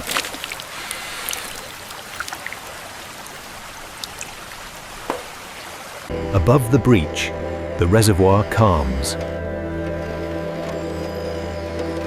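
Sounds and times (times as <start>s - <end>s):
stream water running: 0.0s - 6.2s
faint ticks: 0.6s - 4.3s.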